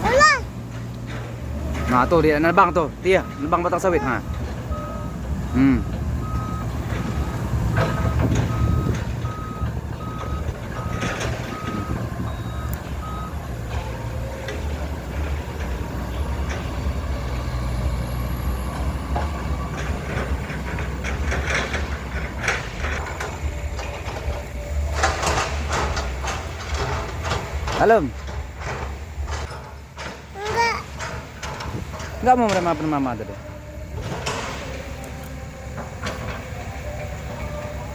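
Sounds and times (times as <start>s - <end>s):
excavator diesel engine running: 0.0s - 37.9s
travel alarm beeping: 1.8s - 13.4s.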